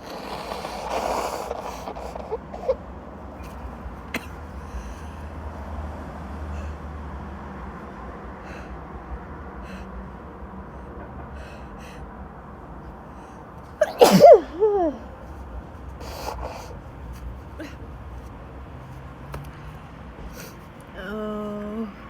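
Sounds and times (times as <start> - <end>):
woman sniffing and breathing: 0.0 - 7.0, 15.4 - 17.9, 20.2 - 20.7.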